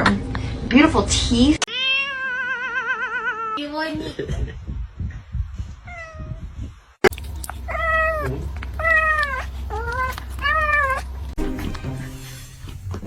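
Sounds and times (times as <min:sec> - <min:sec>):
cat meowing: 0:01.7 - 0:03.6, 0:05.9 - 0:06.4, 0:07.7 - 0:11.1.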